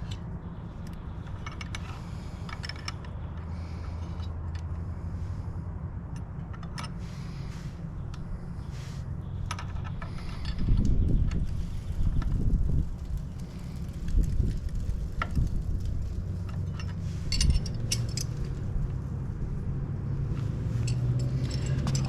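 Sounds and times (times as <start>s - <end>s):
low rumble: 3.6s - 22.0s
wrench clinking on bolts: 16.5s - 18.5s.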